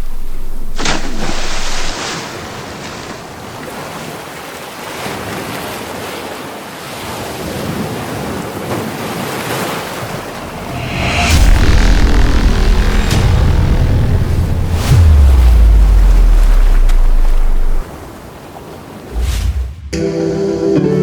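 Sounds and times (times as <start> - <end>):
steady rushing outdoor noise: 9.6 - 18.4.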